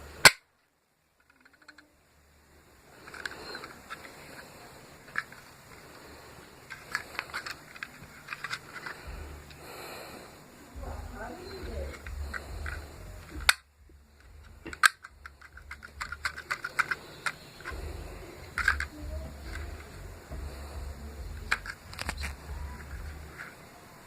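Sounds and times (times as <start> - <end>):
toy gun snapping and clicking: 0.2 - 0.4, 11.9 - 13.7, 14.6 - 17.7, 18.5 - 18.9
low rumble of handling or wind: 10.7 - 16.9, 17.6 - 23.8.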